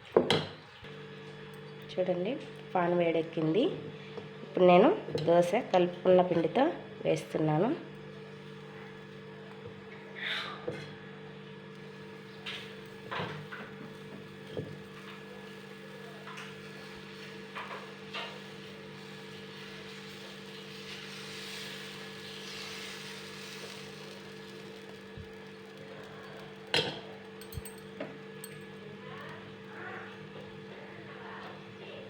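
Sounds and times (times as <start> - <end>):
steady low hum: 0.8 - 32.0
pancake sizzling on a hot pan: 11.7 - 31.4
utensils clinking and knocking: 26.8 - 28.7.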